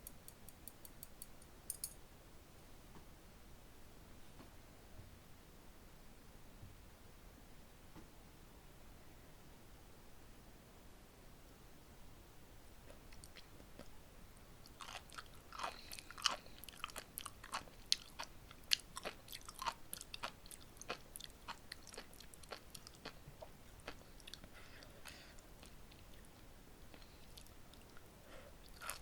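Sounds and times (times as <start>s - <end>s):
chewing with wet pops and crunches: 12.9s - 13.9s, 14.6s - 29.0s.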